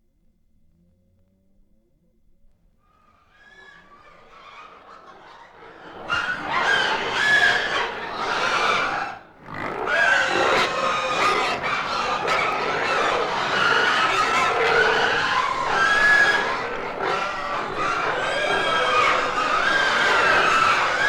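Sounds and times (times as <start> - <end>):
piglets squealing and grunting: 5.8 - 21.0.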